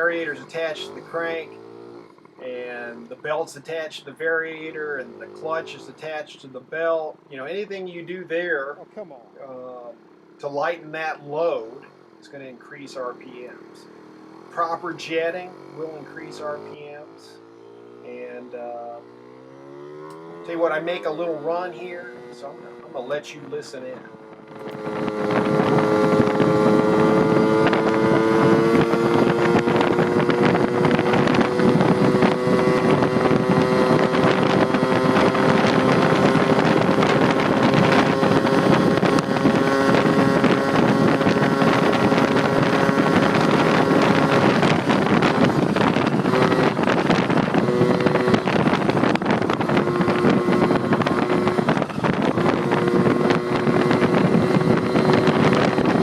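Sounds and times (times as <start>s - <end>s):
moped engine at full throttle: 0.0s - 56.0s
wind rushing over microphone: 24.0s - 56.0s.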